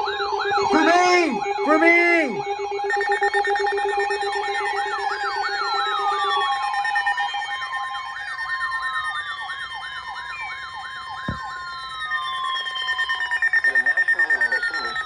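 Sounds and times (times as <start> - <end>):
siren-like tone sweeping up and down: 0.0 - 15.0
steady alert tones: 0.5 - 3.7.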